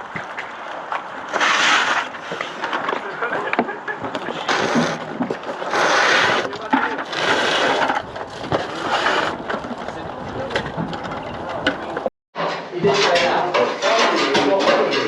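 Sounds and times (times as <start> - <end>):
shovel scraping rubble: 1.3 - 11.3, 12.4 - 15.0
debris knocking: 6.4 - 15.0.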